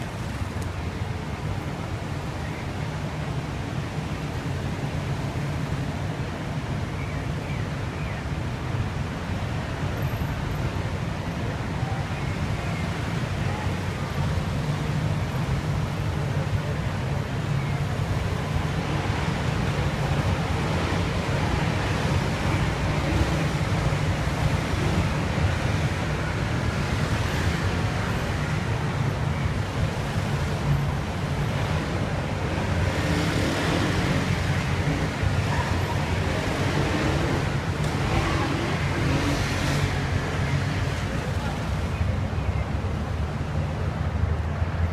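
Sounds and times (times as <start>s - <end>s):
traffic rumble: 0.0s - 44.9s
motorcycles passing: 12.6s - 43.8s.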